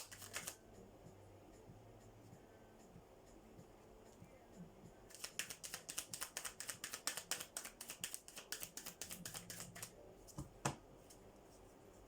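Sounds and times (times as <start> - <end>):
cards being shuffled: 0.0 - 0.6, 5.1 - 9.9.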